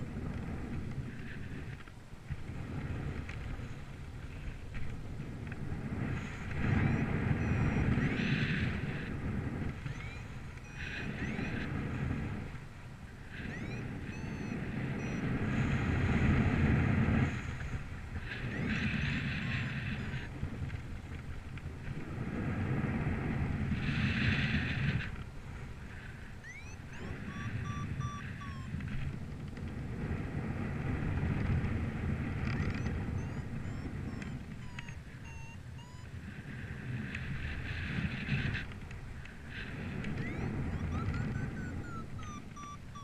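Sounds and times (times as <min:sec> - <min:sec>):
faint chirps: 0:26.4 - 0:28.7, 0:40.2 - 0:43.0.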